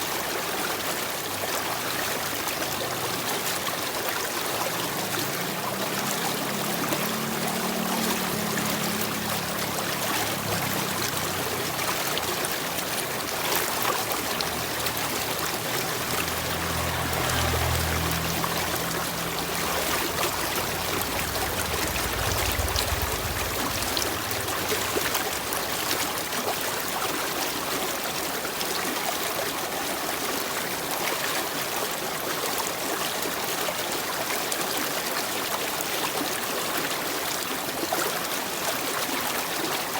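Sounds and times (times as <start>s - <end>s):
stream water flowing: 0.0s - 39.9s
faint low rumble: 12.9s - 27.1s.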